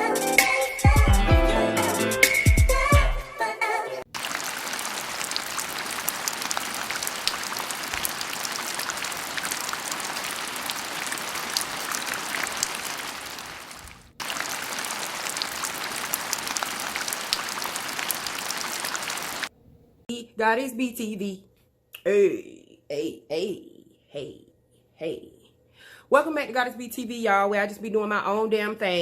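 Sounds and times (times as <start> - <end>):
steady rain falling: 4.1 - 19.5.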